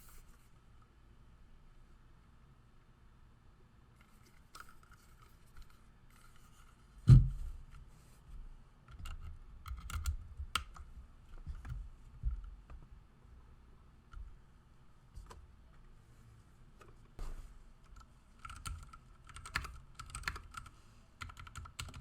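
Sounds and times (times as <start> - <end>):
heavy thump: 7.1 - 7.5.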